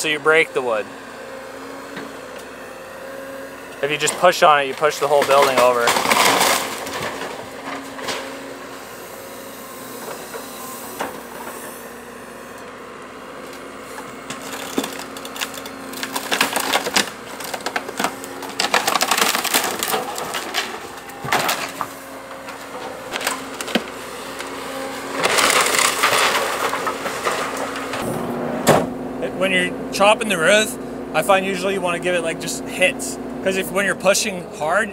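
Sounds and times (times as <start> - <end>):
machine engine hum: 0.0 - 34.9
wood cracking and splintering: 3.8 - 8.6, 13.5 - 28.1.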